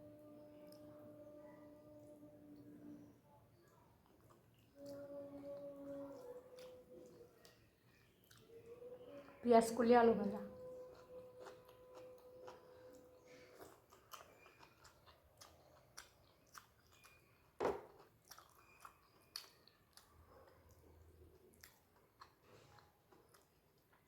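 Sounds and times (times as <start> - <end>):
close-up chewing with crunches: 3.6 - 9.0, 10.5 - 24.0.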